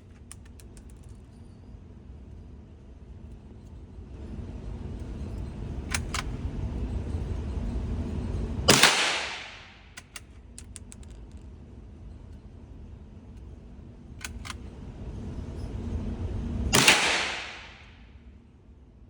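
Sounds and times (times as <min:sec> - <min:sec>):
metallic bolt clicks: 0:00.0 - 0:01.2, 0:05.9 - 0:06.4, 0:09.9 - 0:11.5, 0:14.2 - 0:14.7
rifle shot: 0:08.7 - 0:09.9, 0:16.8 - 0:18.0.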